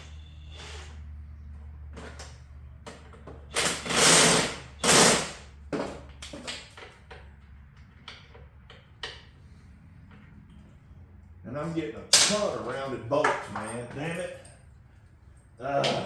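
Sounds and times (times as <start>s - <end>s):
impact wrench bursts: 0.0s - 1.0s, 3.4s - 5.5s.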